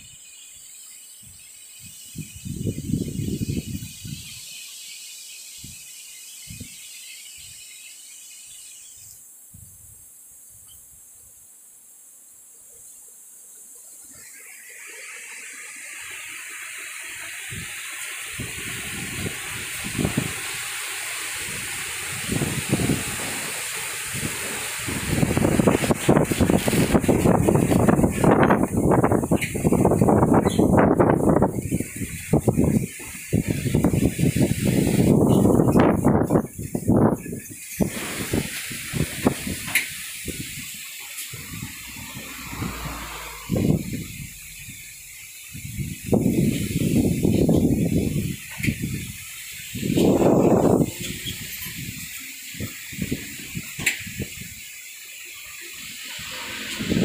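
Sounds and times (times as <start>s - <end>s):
wind buffeting microphone: 1.2s - 4.4s, 17.4s - 54.6s, 56.2s - 57.0s
strong wind gusting: 2.2s - 4.3s, 17.4s - 54.6s, 56.1s - 57.0s.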